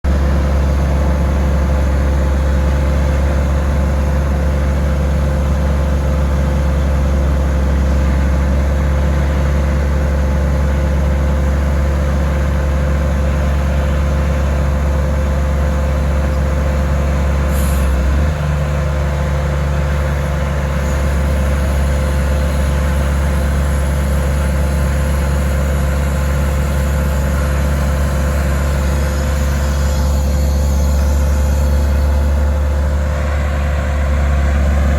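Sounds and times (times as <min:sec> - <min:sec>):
excavator diesel engine running: 0:00.0 - 0:34.9.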